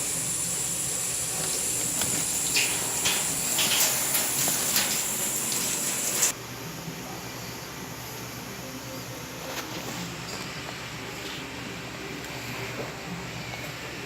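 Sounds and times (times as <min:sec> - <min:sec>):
water hissing: 0:00.0 - 0:06.3
water splashing: 0:01.3 - 0:06.3.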